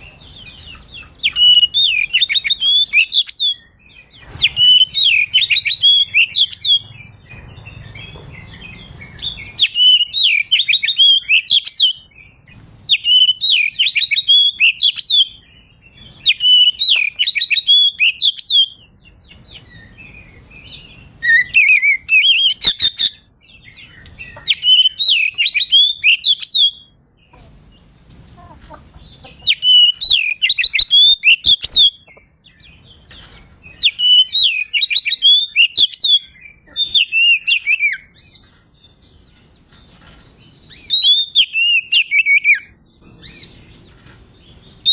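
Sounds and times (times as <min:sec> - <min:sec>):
magpie-robin singing: 0:00.0 - 0:44.9.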